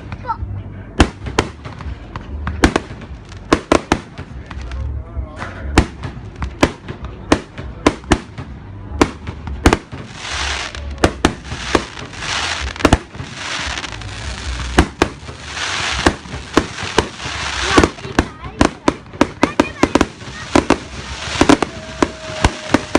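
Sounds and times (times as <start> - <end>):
fireworks bangs: 1.0 - 4.8, 5.7 - 22.9
fireworks hissing: 9.7 - 22.9.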